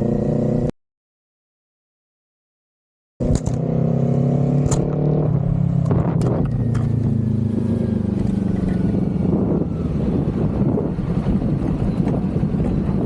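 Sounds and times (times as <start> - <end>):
motorcycle engine running: 4.5 - 13.0.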